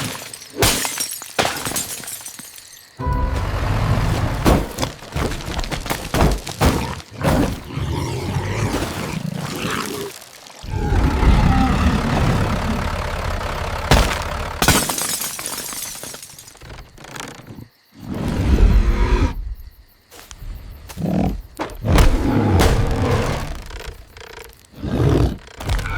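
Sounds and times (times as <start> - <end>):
crashing and shattering: 0.0 - 7.7, 12.8 - 16.8.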